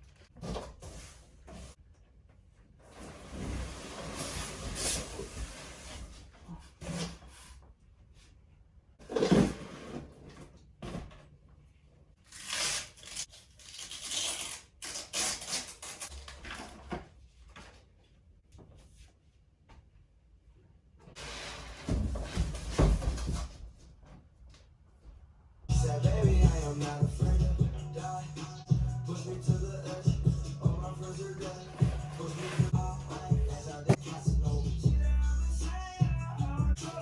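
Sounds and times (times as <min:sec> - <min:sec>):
rustling and tearing of wrapping: 0:12.2 - 0:16.4
scraping and rubbing: 0:28.6 - 0:34.2, 0:36.8 - 0:37.0.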